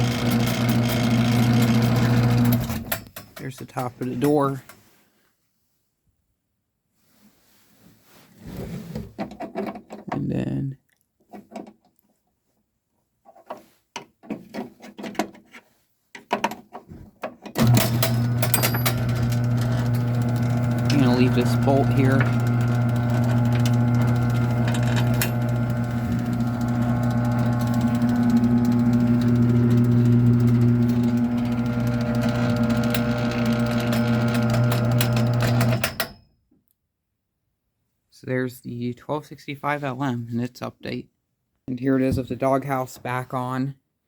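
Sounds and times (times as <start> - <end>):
electric motor hum: 0.0 - 2.7, 17.6 - 35.8.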